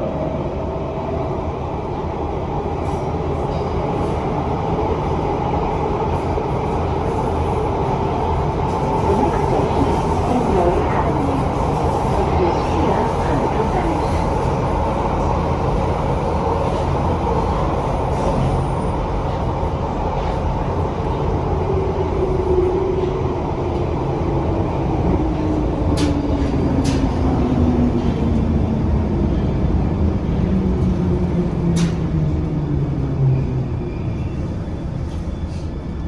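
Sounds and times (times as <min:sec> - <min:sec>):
train rumble: 0:00.0 - 0:36.0.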